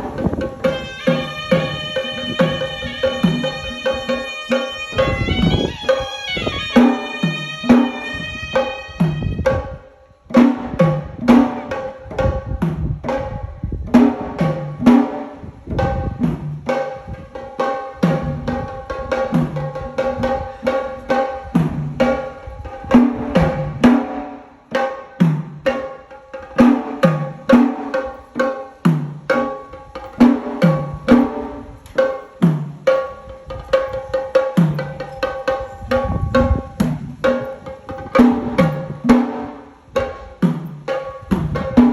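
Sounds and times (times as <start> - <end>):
hand drum strokes: 0.0 - 41.9
steady held note: 0.6 - 9.8.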